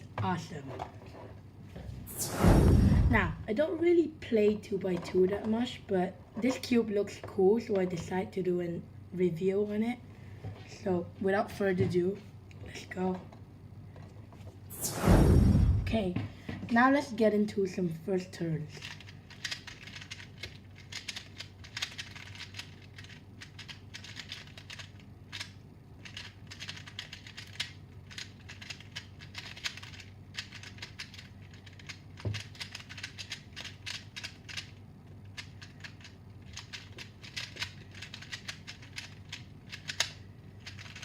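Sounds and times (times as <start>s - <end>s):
puzzle cube clicking: 18.8s - 41.0s.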